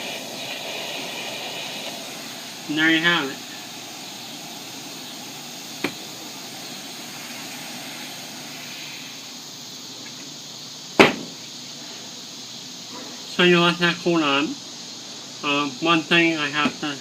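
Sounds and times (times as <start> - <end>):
steady hiss: 0.0 - 17.0
loud sharp knock: 5.8 - 6.0, 11.0 - 11.4.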